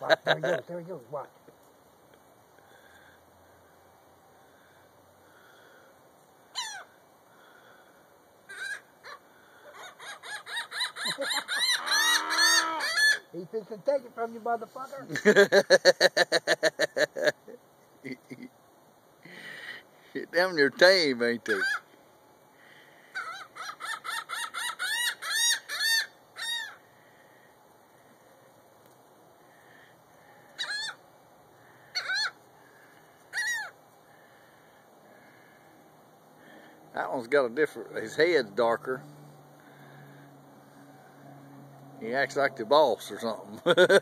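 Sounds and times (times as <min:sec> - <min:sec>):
laughing gulls calling: 0:06.5 - 0:07.0, 0:08.5 - 0:13.3, 0:21.4 - 0:21.9, 0:22.6 - 0:26.8, 0:30.4 - 0:31.0, 0:31.6 - 0:34.5
gull laughing call: 0:09.7 - 0:13.2, 0:43.5 - 0:44.0.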